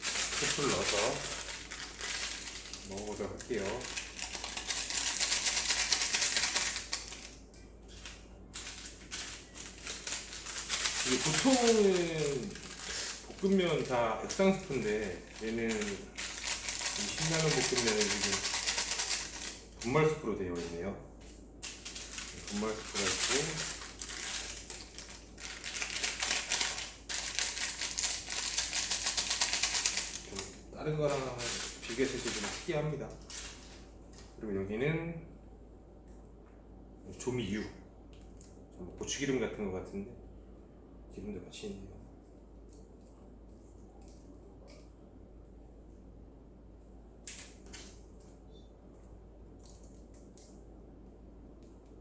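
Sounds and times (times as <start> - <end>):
plastic packaging crinkling: 0.0 - 20.8, 21.6 - 33.9.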